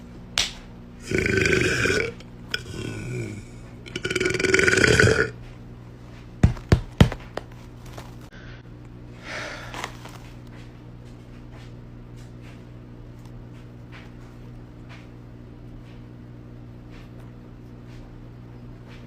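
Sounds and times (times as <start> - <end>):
woman burping: 1.0 - 5.3.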